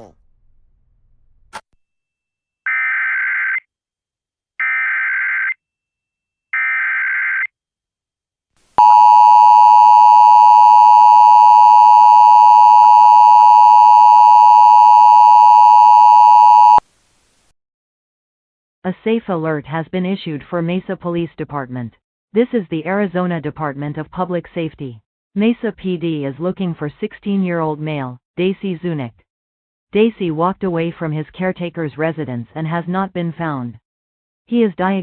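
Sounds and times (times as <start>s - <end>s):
steady attention tone: 8.8s - 16.8s.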